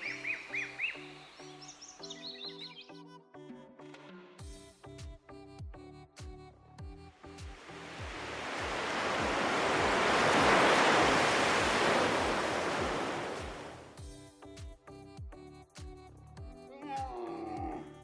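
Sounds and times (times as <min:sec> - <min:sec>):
music with kick-drum beat: 0:04.4 - 0:08.2, 0:14.0 - 0:17.8
rushing surf-like noise: 0:07.6 - 0:14.0.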